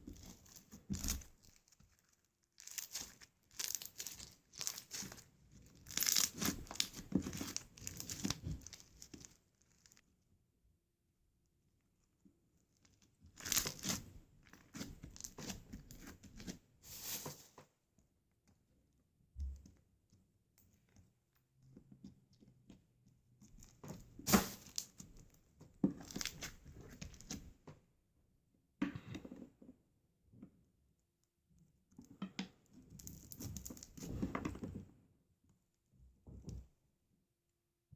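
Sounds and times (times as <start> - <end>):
slime squished by hand: 2.6 - 10.0, 13.3 - 17.2, 23.6 - 25.3.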